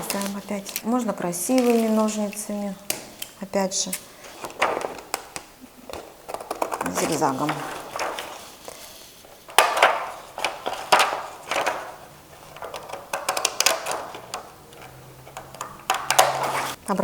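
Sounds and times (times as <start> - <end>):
scissors snipping paper: 0.0 - 8.9.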